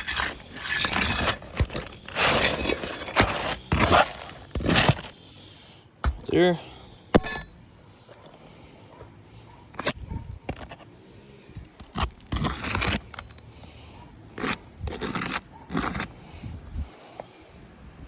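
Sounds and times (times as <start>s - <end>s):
scraping and clattering on roof: 0.0s - 5.1s.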